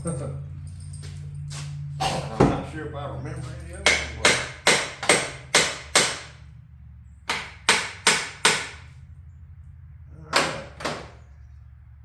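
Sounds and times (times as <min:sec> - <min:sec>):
hammer striking steel bolt: 0:03.8 - 0:06.3.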